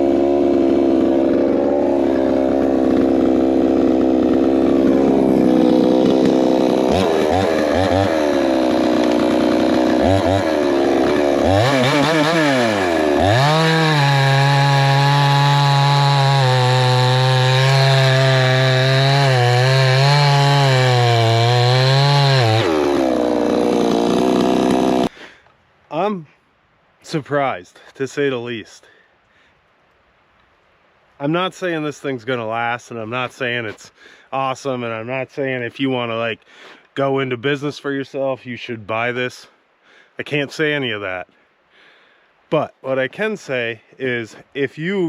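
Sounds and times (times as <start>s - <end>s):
chainsaw engine revving: 0.0s - 25.1s.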